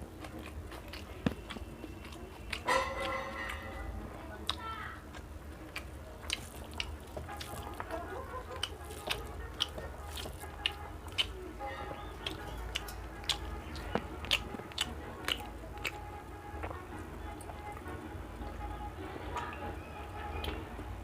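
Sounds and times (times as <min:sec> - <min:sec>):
person chewing: 0:00.0 - 0:18.7, 0:19.3 - 0:20.6
sharp food crunches: 0:00.2 - 0:11.4, 0:12.2 - 0:16.8.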